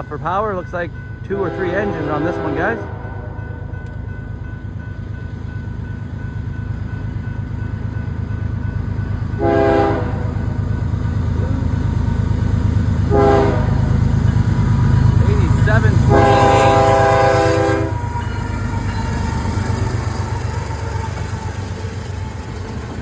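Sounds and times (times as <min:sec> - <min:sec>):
locomotive engine rumble: 0:00.0 - 0:23.0
train air horn blasts: 0:01.4 - 0:03.4, 0:09.4 - 0:10.4, 0:13.1 - 0:13.9, 0:15.8 - 0:18.9.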